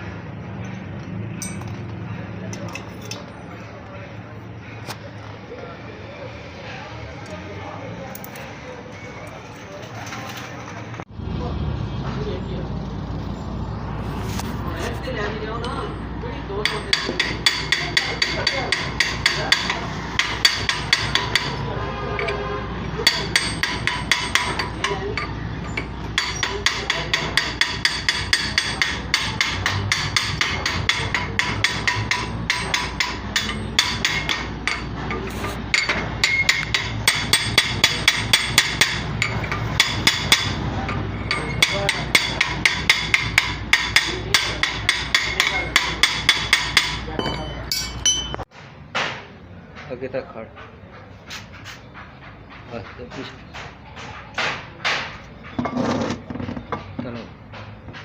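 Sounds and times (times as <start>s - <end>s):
hammer striking steel: 0.6s - 3.4s, 16.6s - 50.0s, 50.6s - 55.7s.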